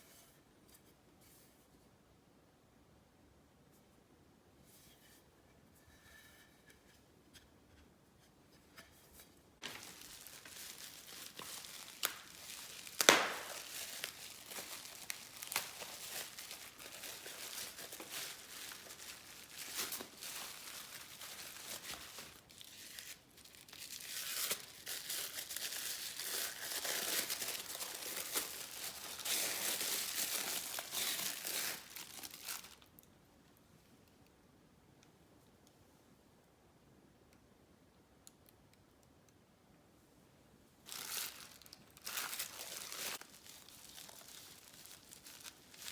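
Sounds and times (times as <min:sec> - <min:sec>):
wrapping rustling and tearing: 0:09.6 - 0:33.1, 0:40.8 - 0:45.9.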